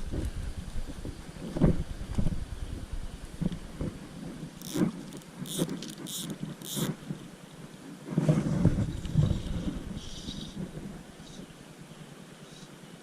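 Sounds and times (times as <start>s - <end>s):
low rustling noise: 0.0s - 13.0s.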